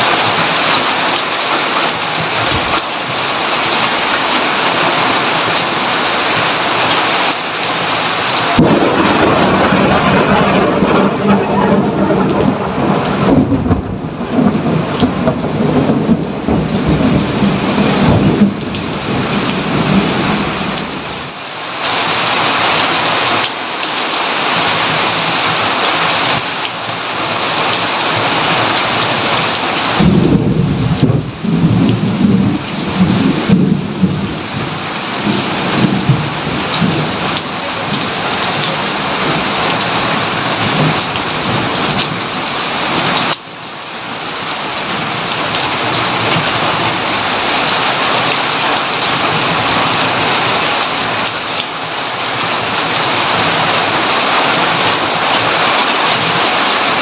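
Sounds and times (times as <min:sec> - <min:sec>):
heavy rain: 0:00.0 - 0:57.0
rolling thunder: 0:08.4 - 0:21.1, 0:29.0 - 0:43.1.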